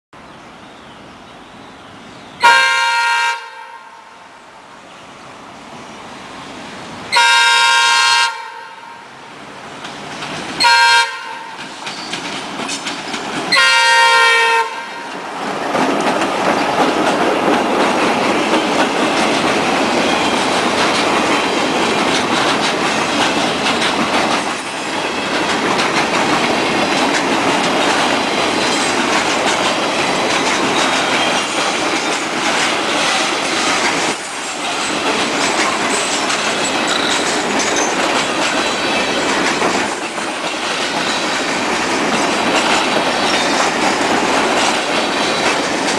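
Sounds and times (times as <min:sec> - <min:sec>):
freight train rumbling: 0:00.2 - 0:45.9
locomotive horn blasts: 0:02.4 - 0:04.2, 0:07.1 - 0:09.1, 0:10.6 - 0:11.6, 0:13.5 - 0:15.1
train wheels clickety-clack: 0:09.6 - 0:45.9.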